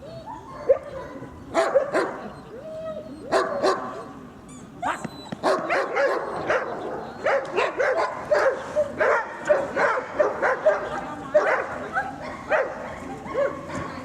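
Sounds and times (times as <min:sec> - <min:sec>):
dog barking: 0:00.6 - 0:02.2, 0:03.3 - 0:04.0, 0:05.4 - 0:13.8.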